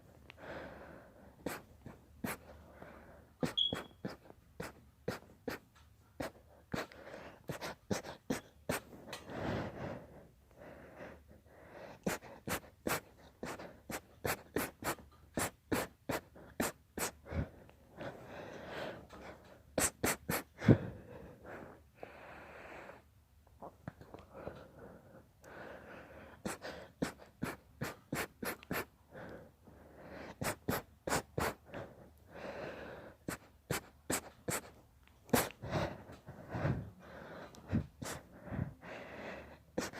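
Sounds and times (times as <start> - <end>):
heavy breaths and snorts: 0.0 - 23.0, 23.9 - 39.9
person stifled sneezing: 3.4 - 6.9, 12.1 - 17.4, 19.8 - 20.9, 26.5 - 28.9, 30.3 - 31.6, 33.3 - 35.6.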